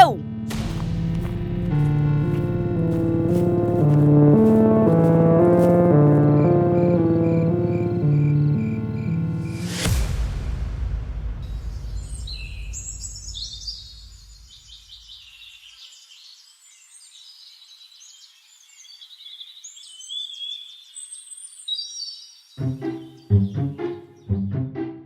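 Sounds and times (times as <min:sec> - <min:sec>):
low rumble: 0:00.2 - 0:15.0
small birds chirping: 0:05.9 - 0:09.7, 0:12.0 - 0:24.4.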